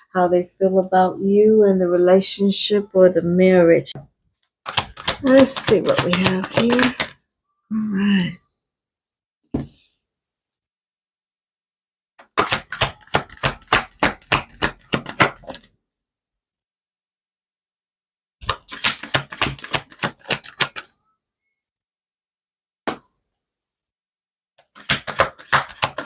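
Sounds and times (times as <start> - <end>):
cards being shuffled: 4.6 - 7.2, 12.2 - 15.7, 18.4 - 20.9, 24.6 - 26.0.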